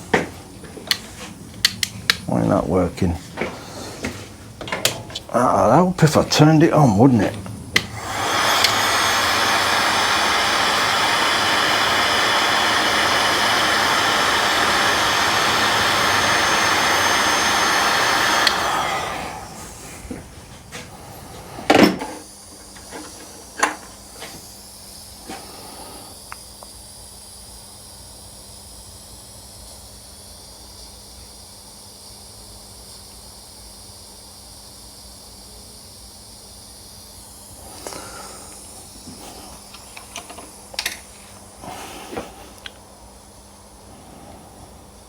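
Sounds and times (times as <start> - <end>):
heat gun hissing: 0.0 - 27.9, 36.2 - 45.0
handling clicks and knocks: 0.2 - 2.3.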